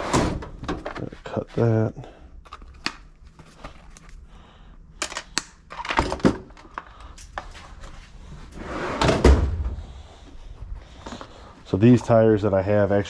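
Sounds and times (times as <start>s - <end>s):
clicks and knocks of parts handled: 2.4s - 4.2s, 5.0s - 7.9s.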